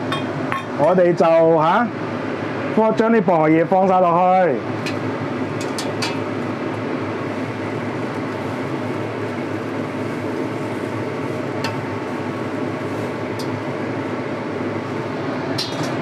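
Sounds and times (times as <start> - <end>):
soup pot humming on stove: 4.6 - 16.0.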